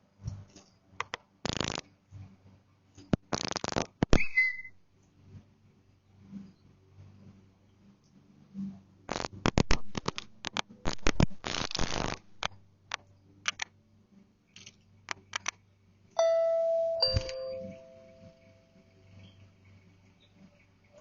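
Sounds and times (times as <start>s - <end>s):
sharp clicks and scratches: 0.2s - 4.4s, 6.2s - 13.8s, 14.5s - 15.6s
two-tone doorbell chime: 16.2s - 18.3s.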